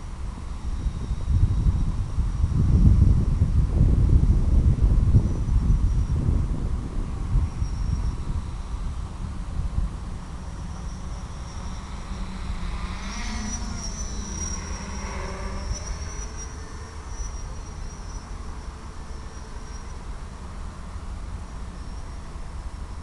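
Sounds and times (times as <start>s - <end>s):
low outdoor rumble: 0.0s - 23.0s
crickets chirring: 0.5s - 2.5s, 7.4s - 23.0s
brief whine: 7.2s - 23.0s.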